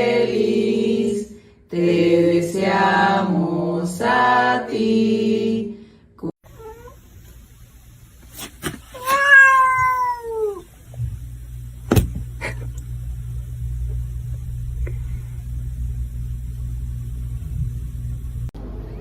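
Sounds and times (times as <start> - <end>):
steady low hum: 6.4 - 8.6, 10.6 - 19.0
cat meowing: 6.5 - 7.0, 8.9 - 10.7.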